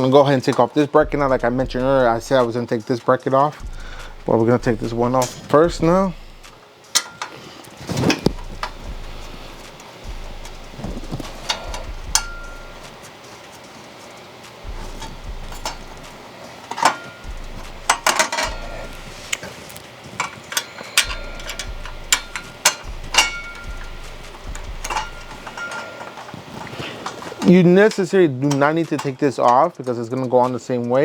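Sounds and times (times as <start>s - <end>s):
metal parts clinking and knocking: 6.9s - 9.8s, 10.4s - 13.0s, 14.7s - 29.7s.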